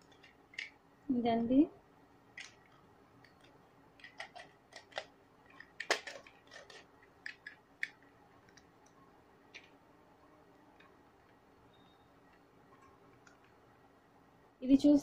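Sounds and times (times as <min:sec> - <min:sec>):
plastic parts clicking and tapping: 0:00.0 - 0:00.8, 0:02.3 - 0:09.8, 0:12.3 - 0:13.6.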